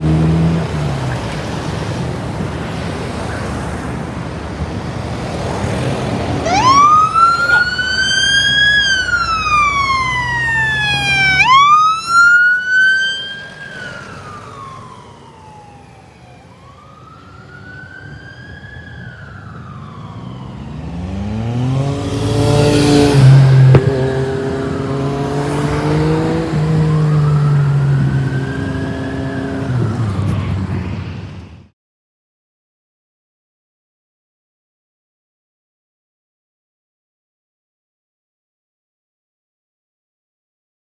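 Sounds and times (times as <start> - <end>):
truck engine revving: 0.0 - 3.3, 4.4 - 14.4, 20.6 - 31.4
siren wailing: 6.4 - 30.6.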